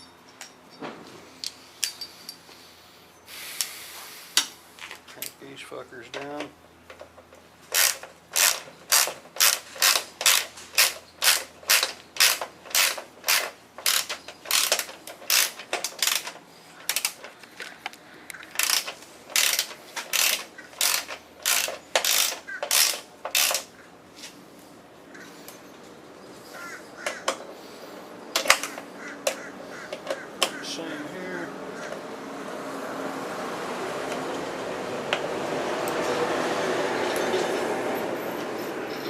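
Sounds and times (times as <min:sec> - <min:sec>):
ratchet wrench clicking: 0:07.7 - 0:17.2, 0:18.4 - 0:23.7.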